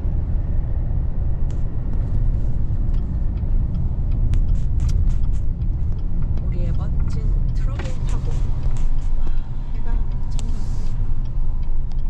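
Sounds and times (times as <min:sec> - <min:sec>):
pickup truck engine rumble: 0:00.0 - 0:12.0
road noise: 0:00.0 - 0:12.0.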